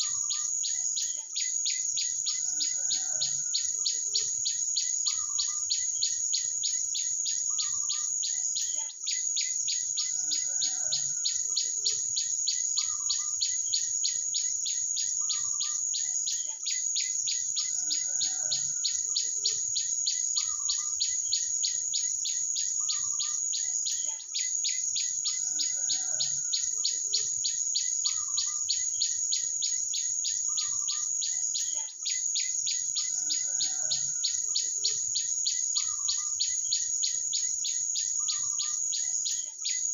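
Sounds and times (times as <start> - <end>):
high insect trill: 0.0 - 39.9
songbirds calling: 0.0 - 39.9.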